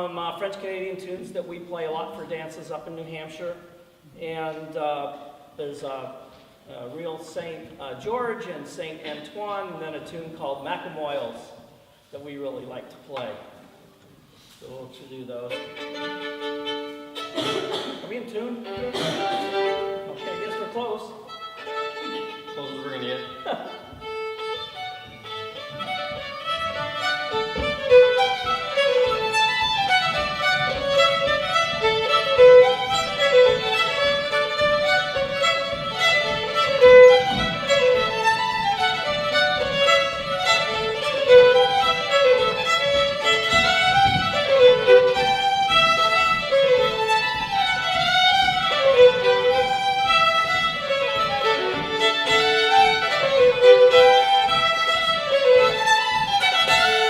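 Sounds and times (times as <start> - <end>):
two fiddles playing a reel: 15.4 - 17.5, 18.5 - 57.0.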